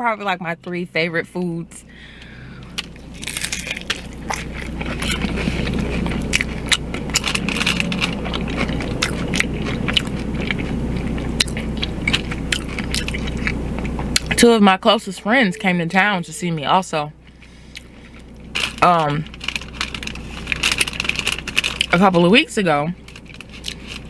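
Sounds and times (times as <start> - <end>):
crunchy taco chewing: 2.1 - 14.4, 17.3 - 24.0.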